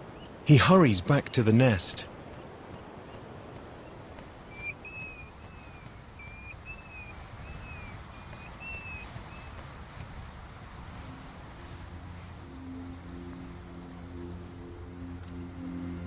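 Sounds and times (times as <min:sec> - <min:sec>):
low background noise: 0:00.0 - 0:16.0
bird whistling calls: 0:03.8 - 0:09.6.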